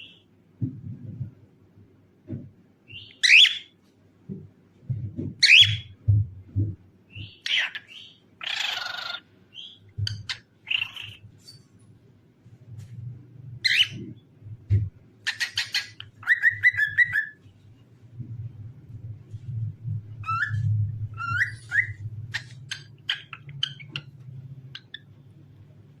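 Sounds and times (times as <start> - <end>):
low steady hum: 0.0 - 26.0
cockatiel whistling and chirping: 2.9 - 3.7, 5.4 - 5.9, 7.1 - 11.2, 13.6 - 14.1, 15.3 - 17.4, 20.2 - 24.1.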